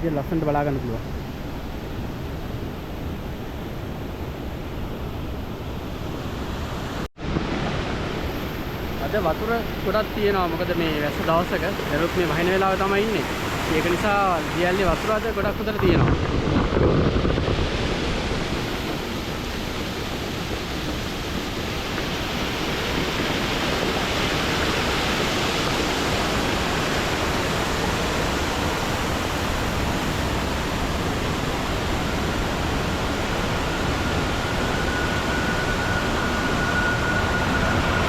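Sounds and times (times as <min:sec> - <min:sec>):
waterfall rushing: 0:07.8 - 0:16.0, 0:18.6 - 0:38.0
faint steady tone: 0:26.2 - 0:38.0.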